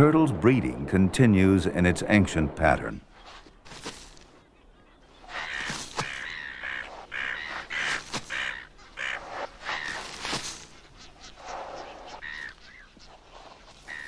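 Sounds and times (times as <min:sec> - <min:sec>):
short bird calls: 0:04.3 - 0:14.0.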